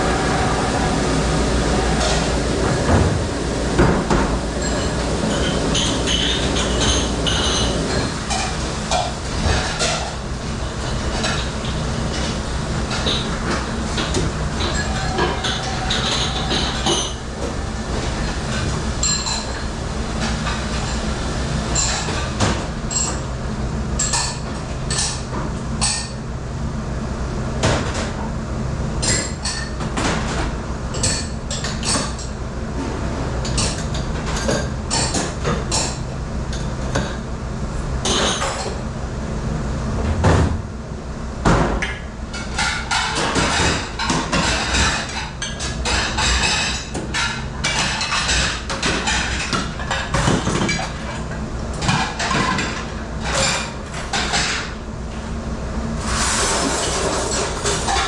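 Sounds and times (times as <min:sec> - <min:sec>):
dishes and utensils clattering: 0:00.0 - 0:21.1, 0:21.7 - 0:23.2, 0:29.0 - 0:37.2, 0:38.0 - 0:38.8, 0:41.7 - 0:54.8, 0:56.0 - 0:58.0
steady machine hum: 0:00.0 - 0:24.9.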